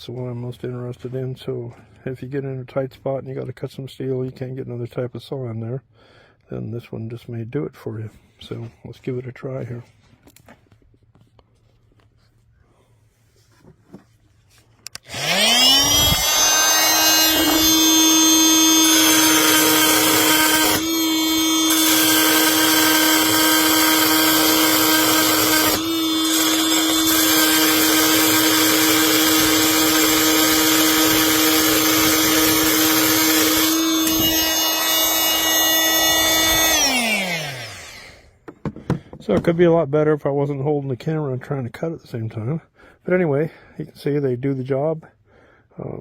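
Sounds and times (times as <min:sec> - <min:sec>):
multi-tool blade cutting steel: 0:14.9 - 0:38.3.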